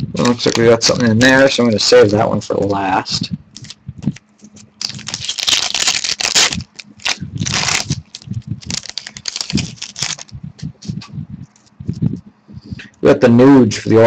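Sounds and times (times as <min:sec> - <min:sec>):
trading cards rustling: 0:03.6 - 0:10.3.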